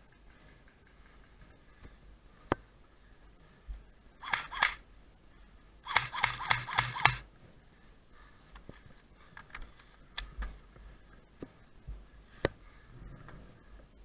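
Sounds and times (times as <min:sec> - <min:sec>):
airsoft guns firing: 0:04.2 - 0:04.8, 0:05.9 - 0:07.2.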